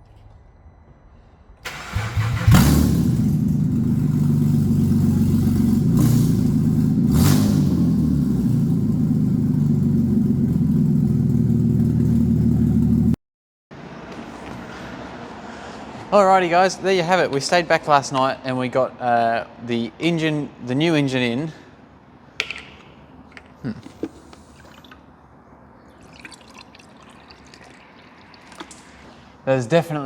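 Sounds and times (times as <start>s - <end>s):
car engine starting and idling: 1.6s - 13.2s.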